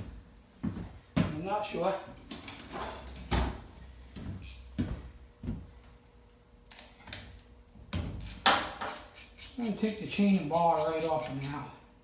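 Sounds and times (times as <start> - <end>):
metal tools clinking on workbench: 2.3 - 3.6, 4.4 - 4.7, 8.2 - 11.7.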